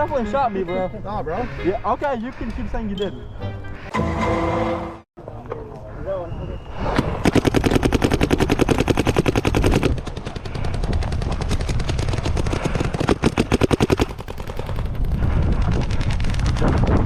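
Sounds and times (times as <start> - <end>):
paintball marker firing: 6.9 - 16.8
wind rumbling on microphone: 14.1 - 17.0.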